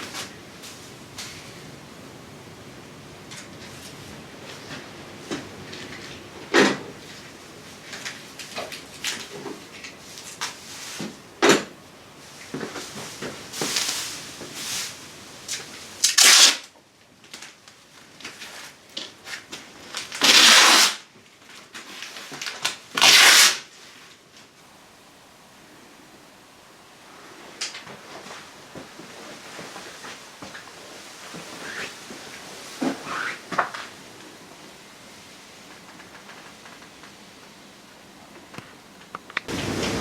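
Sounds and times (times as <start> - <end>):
plastic sheeting rustling: 3.3 - 11.2, 12.1 - 24.6, 27.1 - 37.2, 39.5 - 40.0
masking tape pulled off roll: 16.0 - 16.7, 20.0 - 21.1, 22.0 - 23.7.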